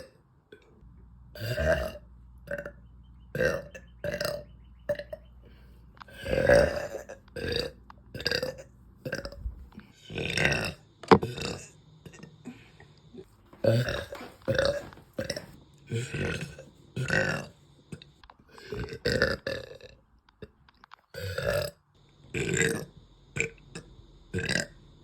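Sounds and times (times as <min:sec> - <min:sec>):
woman burping: 0:01.4 - 0:05.2, 0:06.1 - 0:09.5, 0:10.1 - 0:19.9, 0:23.4 - 0:24.7.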